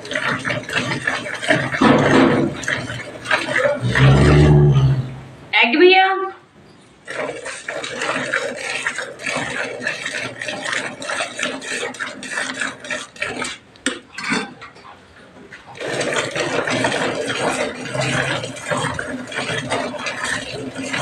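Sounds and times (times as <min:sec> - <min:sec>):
milk squirting into metal pail: 0:00.0 - 0:05.1, 0:07.0 - 0:21.0.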